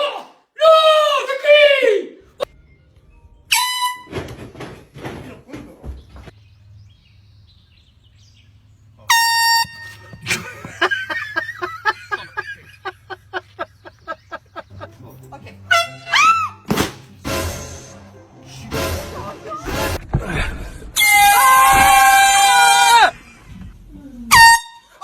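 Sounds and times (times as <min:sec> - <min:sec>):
air horn blast: 0:03.5 - 0:04.4, 0:09.1 - 0:10.4, 0:15.6 - 0:20.0, 0:24.3 - 0:25.0.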